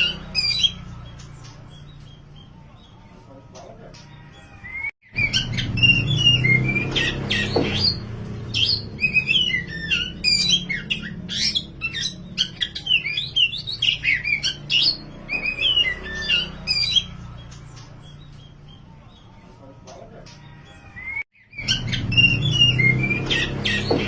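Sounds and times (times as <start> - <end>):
songbird singing whistles: 4.6 - 17.1, 21.0 - 24.0.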